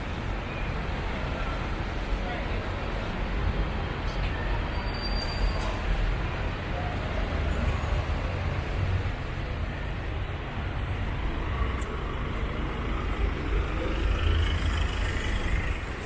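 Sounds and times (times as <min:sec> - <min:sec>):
low traffic rumble: 0:00.0 - 0:16.0
vehicles passing: 0:05.6 - 0:16.0.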